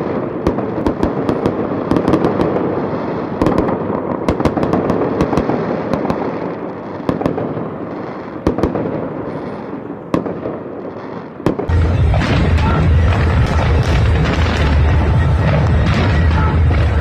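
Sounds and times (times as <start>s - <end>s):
fireworks rumbling and crackling: 0.0s - 17.0s
sharp firework bangs: 0.0s - 17.0s
deep booming: 11.7s - 17.0s.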